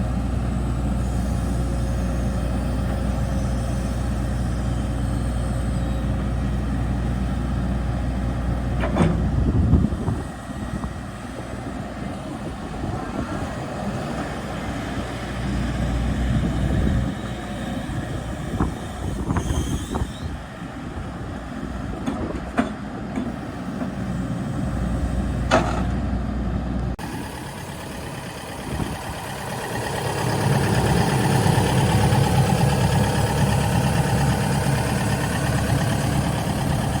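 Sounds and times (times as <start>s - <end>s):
excavator diesel engine running: 0.0s - 37.0s.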